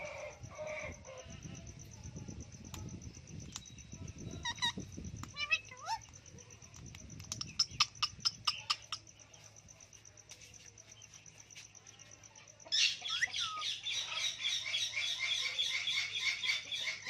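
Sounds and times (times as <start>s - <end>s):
parrot chattering calls: 4.4s - 6.0s.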